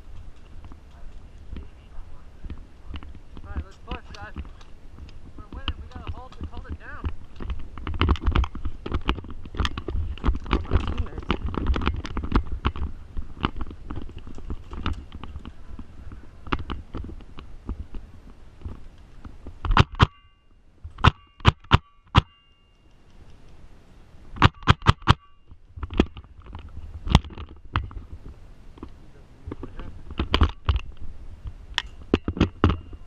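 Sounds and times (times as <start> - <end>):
rustling and clattering of gear: 0.0 - 21.7, 24.4 - 33.0
metallic ring: 20.0 - 23.0, 24.5 - 25.6.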